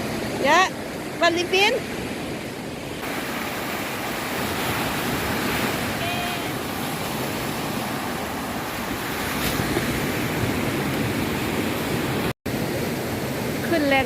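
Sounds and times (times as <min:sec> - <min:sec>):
surf breaking on sandy beach: 0:03.0 - 0:14.0.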